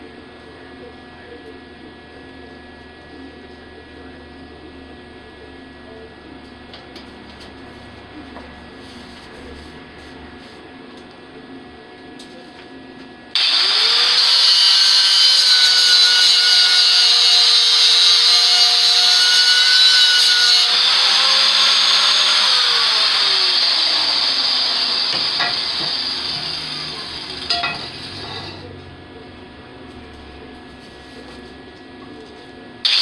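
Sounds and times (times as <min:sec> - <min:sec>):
angle grinder whining on steel: 0:13.4 - 0:28.9.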